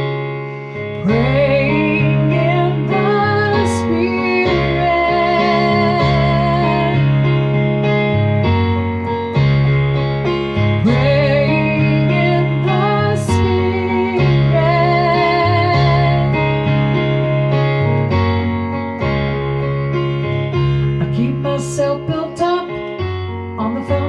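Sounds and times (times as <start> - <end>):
electric piano chords: 0.0 - 24.0
woman singing wordlessly: 1.0 - 7.0, 10.8 - 16.4, 21.1 - 22.8, 23.6 - 24.0.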